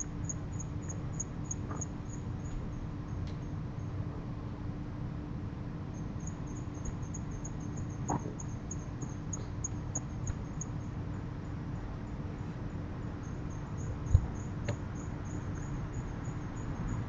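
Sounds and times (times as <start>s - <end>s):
insect chirps: 0.0s - 3.2s, 5.9s - 11.2s, 12.4s - 17.0s.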